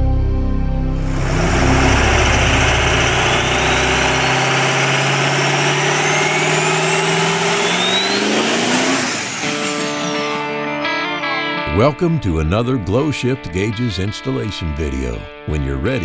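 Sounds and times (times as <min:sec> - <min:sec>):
deep engine rumble: 0:00.0 - 0:10.4
engine whine rising in pitch: 0:00.6 - 0:11.3.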